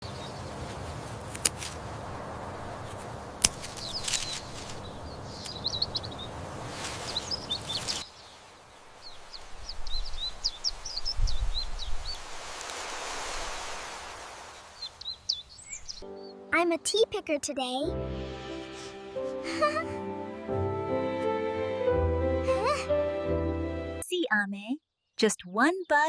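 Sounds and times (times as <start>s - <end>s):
small birds chirping: 0.0s - 0.9s, 2.5s - 12.6s, 14.5s - 16.9s
outdoor hiss: 0.6s - 16.0s.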